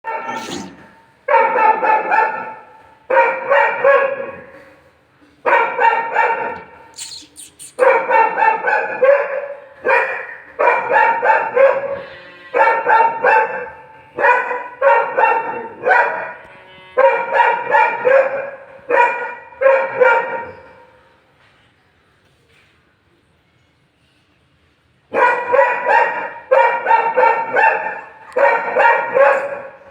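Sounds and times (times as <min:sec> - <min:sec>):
dogs barking: 0:00.0 - 0:04.5, 0:05.5 - 0:11.9, 0:12.6 - 0:16.4, 0:17.0 - 0:20.5, 0:25.1 - 0:29.9.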